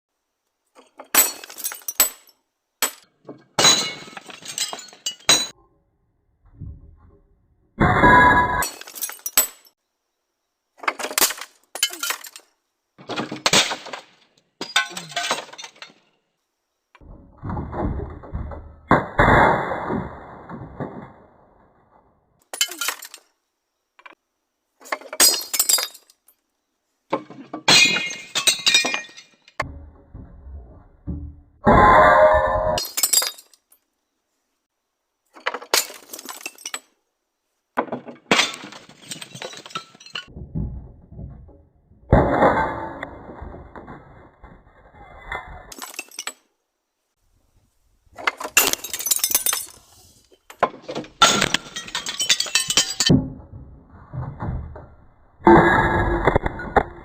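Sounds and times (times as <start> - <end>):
breaking pieces clinking: 0.8 - 5.6, 8.6 - 9.8, 10.8 - 16.2, 22.4 - 23.4, 24.8 - 26.4, 27.2 - 29.7, 32.8 - 33.9, 35.4 - 37.0, 37.8 - 40.4, 45.7 - 46.5, 48.2 - 53.2
fragments clinking: 48.2 - 53.1.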